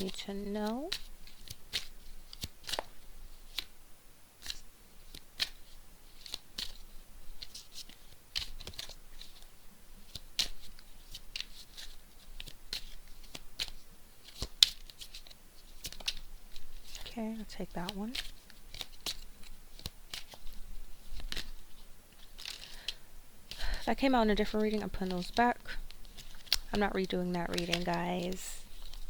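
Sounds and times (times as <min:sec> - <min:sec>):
cards being shuffled: 0:00.0 - 0:03.8, 0:04.4 - 0:29.0.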